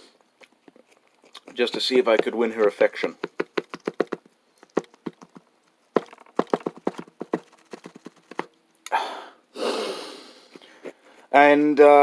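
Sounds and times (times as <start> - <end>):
person chewing with wet smacks: 0.1 - 2.6
breaths through the nose: 8.9 - 11.3.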